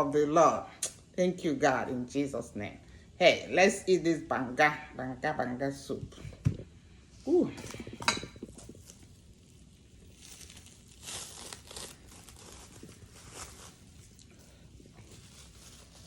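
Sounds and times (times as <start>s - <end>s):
wrapping crinkling and rustling: 7.6s - 16.0s.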